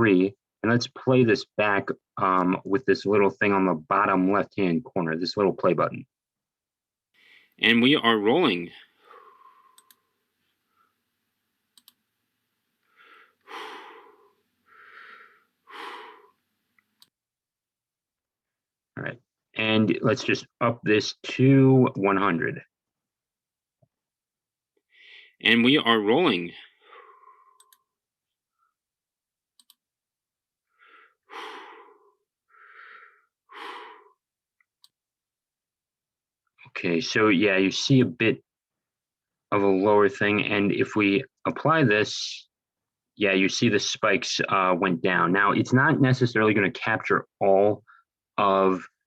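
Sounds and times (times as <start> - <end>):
person breathing close to microphone: 7.2 - 7.6, 8.8 - 11.0, 12.8 - 16.6, 26.6 - 28.6, 30.6 - 34.2
faint clicks: 9.7 - 10.1, 11.7 - 12.0, 27.6 - 27.9, 29.6 - 29.8
faint click: 11.8 - 12.0, 29.6 - 29.8.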